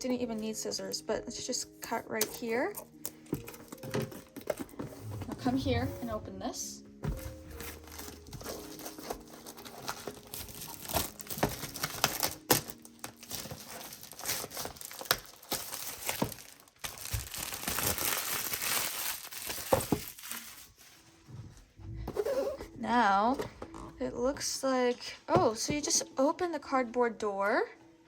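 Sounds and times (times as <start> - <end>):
plastic wrapping crinkling and tearing: 2.2 - 5.2, 7.1 - 21.0.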